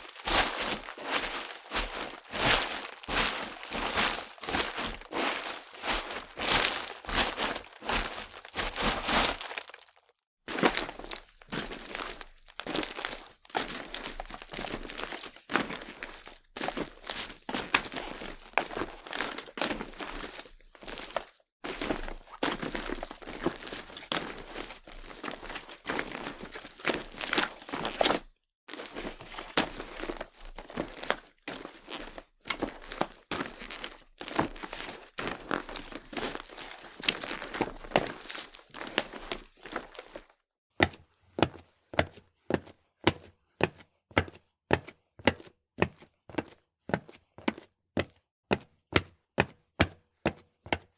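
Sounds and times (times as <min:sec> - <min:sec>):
footsteps crunching: 0:00.0 - 0:40.3.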